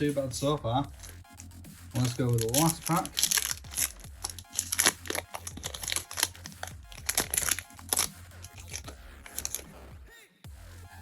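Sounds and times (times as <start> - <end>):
background music: 0.0 - 11.0
foil wrapper crinkling and tearing: 0.9 - 9.7.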